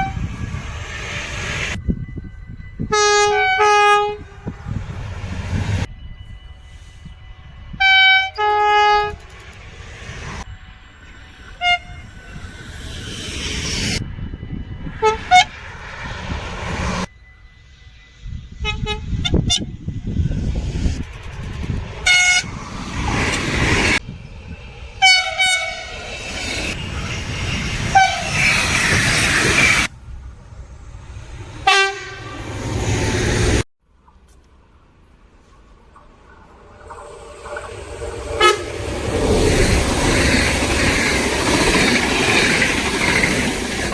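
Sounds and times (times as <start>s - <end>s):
train horn toots: 0.0s - 0.4s, 2.8s - 4.7s, 7.7s - 9.3s, 11.5s - 12.2s, 14.9s - 15.6s, 18.5s - 19.8s, 22.0s - 22.6s, 25.0s - 27.1s, 27.8s - 29.1s, 31.6s - 32.6s, 38.3s - 38.9s
rush of passing train: 0.0s - 33.7s, 35.0s - 43.9s.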